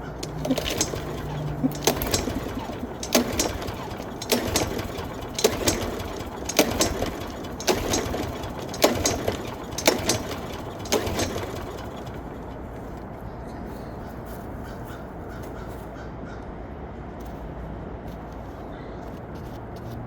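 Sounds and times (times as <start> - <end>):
lawn mower pull starts: 0.0 - 13.2
recoil starter clack: 0.0 - 13.2.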